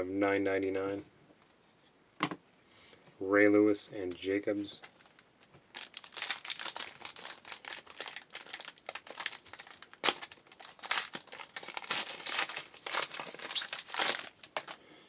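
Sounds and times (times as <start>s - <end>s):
wrapper tearing and crinkling: 4.8s - 14.8s.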